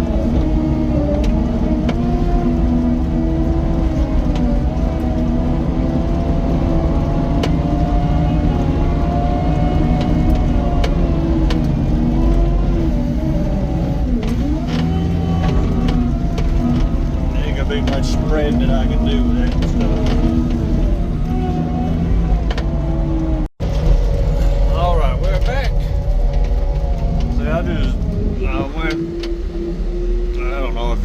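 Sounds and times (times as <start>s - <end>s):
diesel engine running under load: 0.0s - 31.0s
sharp clicks and knocks: 9.8s - 12.6s, 14.1s - 18.3s, 19.4s - 21.4s, 22.3s - 24.0s.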